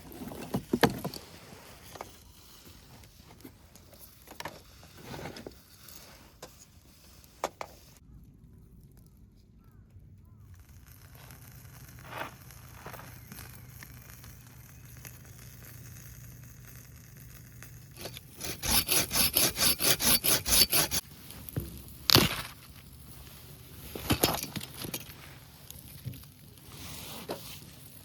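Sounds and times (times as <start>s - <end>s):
hand saw cutting a branch: 18.0s - 21.0s.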